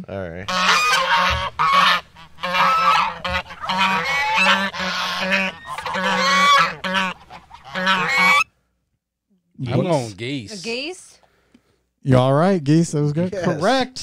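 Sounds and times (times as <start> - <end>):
geese honking: 0.4 - 8.5.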